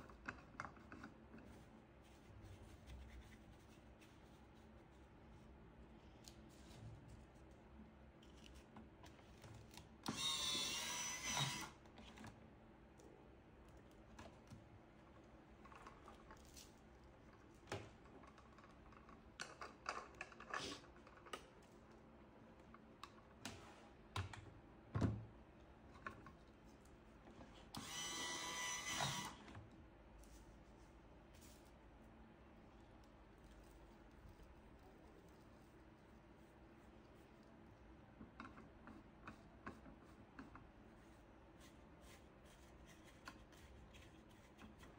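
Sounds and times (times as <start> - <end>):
small motor whining: 10.1 - 11.8, 27.8 - 29.4.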